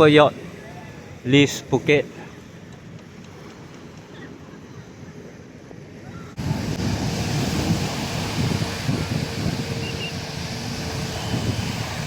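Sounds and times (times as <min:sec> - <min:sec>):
surf on beach: 0:00.0 - 0:12.0
wind buffeting microphone: 0:00.0 - 0:12.0.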